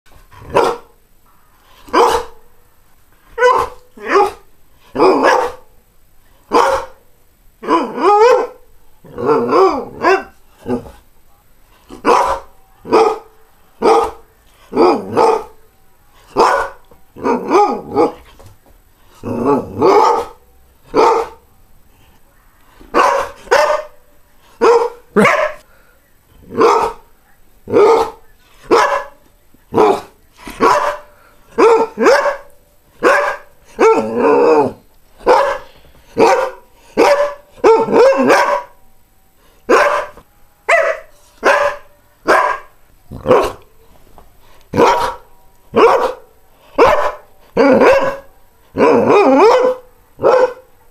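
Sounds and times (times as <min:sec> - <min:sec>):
dog barking: 0:00.5 - 0:01.0, 0:01.9 - 0:02.4, 0:03.4 - 0:05.7, 0:06.5 - 0:07.0, 0:07.6 - 0:08.6, 0:09.4 - 0:10.4, 0:12.0 - 0:15.6, 0:16.3 - 0:18.2, 0:19.8 - 0:21.4, 0:22.9 - 0:24.0, 0:24.6 - 0:25.6, 0:26.5 - 0:27.0, 0:27.7 - 0:29.2, 0:29.8 - 0:34.2, 0:35.2 - 0:38.8, 0:39.7 - 0:43.6, 0:44.8 - 0:50.9.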